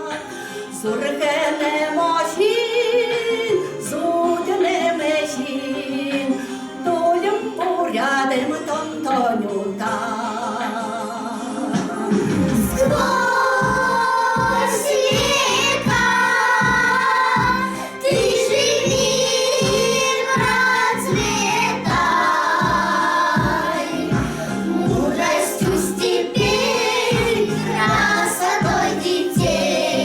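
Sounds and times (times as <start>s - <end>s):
children singing: 0.0s - 30.0s
backing track with steady beat: 11.6s - 30.0s.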